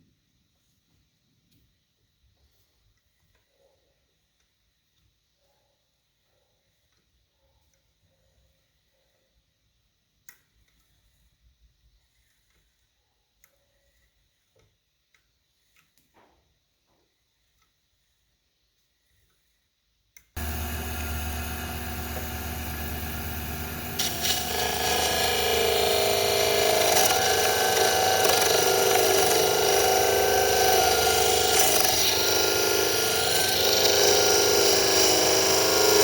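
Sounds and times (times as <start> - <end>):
click: 10.2 - 10.9, 20.1 - 20.3
power tool motor running: 20.4 - 36.0.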